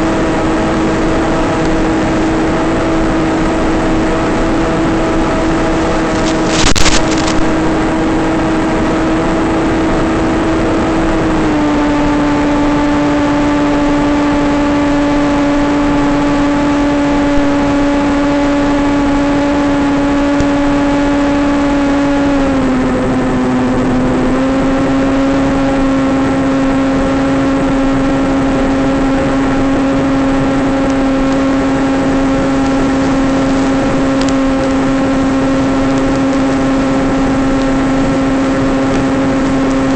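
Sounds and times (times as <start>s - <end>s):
model plane propeller droning: 0.0s - 39.9s
brief crackle: 6.1s - 7.7s.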